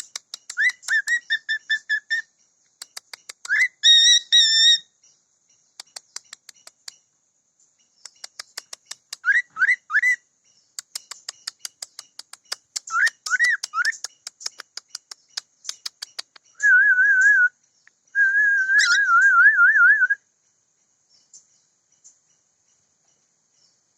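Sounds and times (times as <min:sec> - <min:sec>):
cockatiel clicking chatter: 0:00.0 - 0:04.2, 0:05.8 - 0:07.0, 0:08.0 - 0:09.4, 0:10.8 - 0:16.7
cockatiel whistling: 0:18.2 - 0:20.2.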